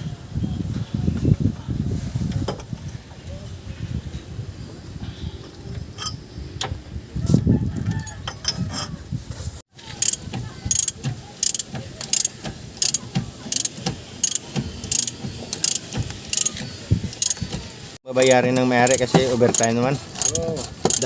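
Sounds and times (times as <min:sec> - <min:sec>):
ratchet wrench clicks: 0:09.9 - 0:17.5, 0:18.8 - 0:21.0
metal knocks and clanks: 0:09.9 - 0:21.0.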